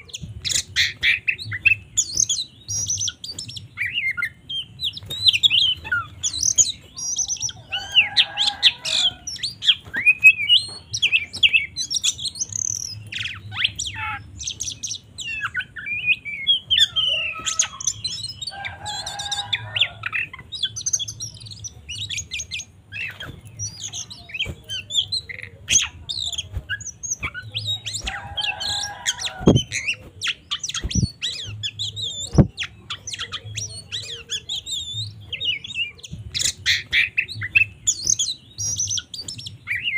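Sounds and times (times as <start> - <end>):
bird singing chirps and whistles: 0.0 - 39.9.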